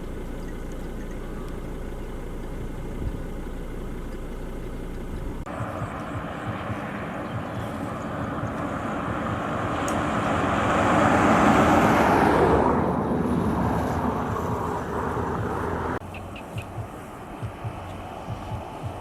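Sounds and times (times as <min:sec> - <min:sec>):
vehicle passing by: 0:05.4 - 0:19.0.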